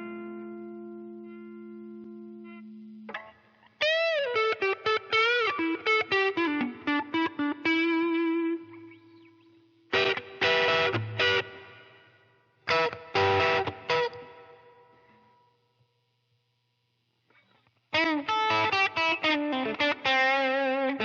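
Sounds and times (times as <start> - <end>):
guitar chord stabs: 0.0 - 9.0, 9.9 - 15.5
distorted electric guitar lead: 0.0 - 9.3, 9.9 - 15.3.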